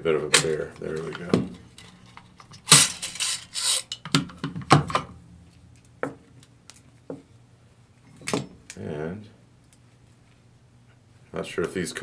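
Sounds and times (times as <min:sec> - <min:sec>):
metal scraping and sliding: 0:01.8 - 0:04.0.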